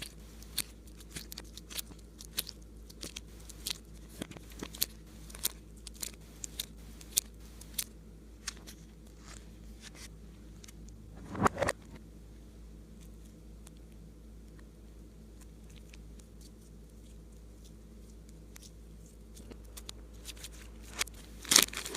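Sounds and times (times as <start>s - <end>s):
slime squish: 0.0s - 11.8s, 15.4s - 21.9s.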